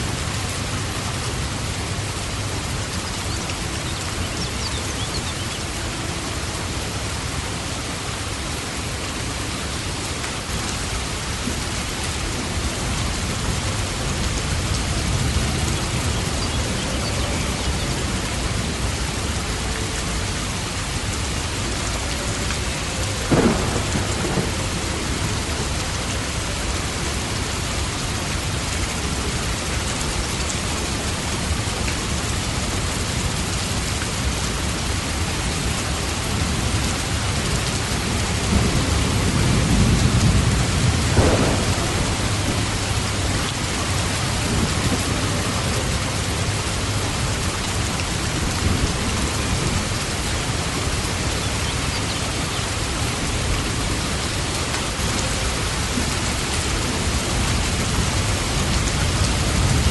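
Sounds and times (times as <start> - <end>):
heavy rain: 0.0 - 59.9
thunder rumble: 23.1 - 27.4, 37.8 - 53.9
sharp thunder crack: 23.3 - 24.7, 40.8 - 42.8.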